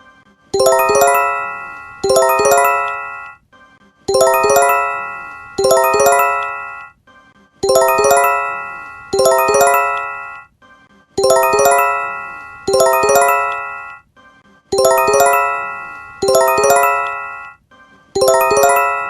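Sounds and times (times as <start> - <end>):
alert chime rising bell notes: 0.6 - 3.4, 4.1 - 6.9, 7.6 - 10.4, 11.2 - 14.0, 14.8 - 17.6, 18.2 - 19.0.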